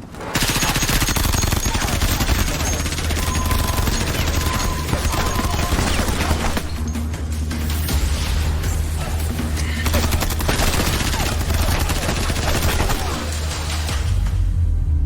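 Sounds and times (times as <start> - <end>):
rapid gunfire: 0.0 - 6.8, 9.8 - 14.0.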